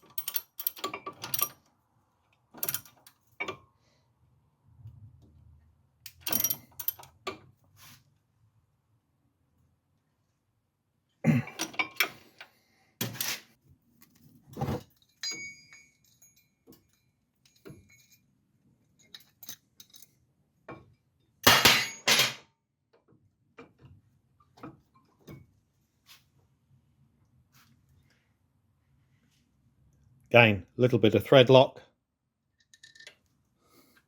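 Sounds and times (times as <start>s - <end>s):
metal tools clanking: 14.6s - 18.2s
faint metallic ringing: 15.0s - 18.2s.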